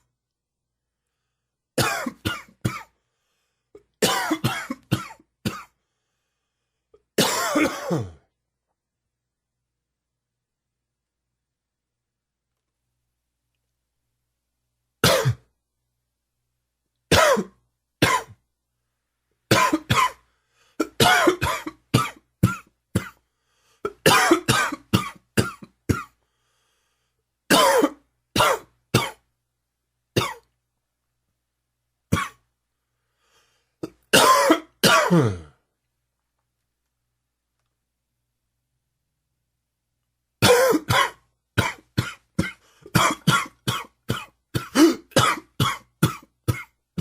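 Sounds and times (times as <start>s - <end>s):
man coughing harshly: 1.8s - 2.9s, 4.0s - 5.7s, 7.2s - 8.2s, 15.0s - 15.5s, 17.1s - 18.4s, 19.5s - 20.2s, 20.8s - 23.2s, 23.9s - 26.2s, 27.5s - 29.2s, 32.2s - 32.4s, 33.8s - 35.6s, 40.4s - 46.8s.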